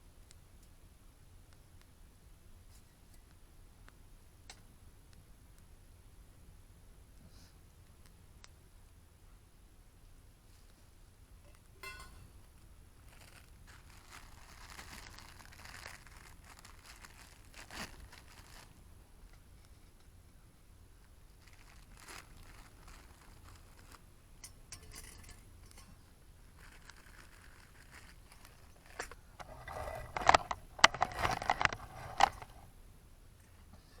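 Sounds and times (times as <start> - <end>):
faint crinkling and rustling: 10.4 - 34.0.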